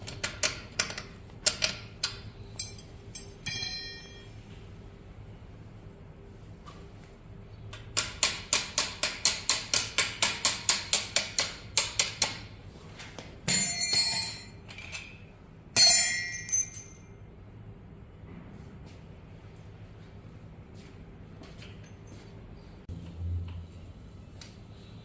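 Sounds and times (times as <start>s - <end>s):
metallic clinks: 2.6s - 4.3s, 13.5s - 15.2s, 15.8s - 17.1s.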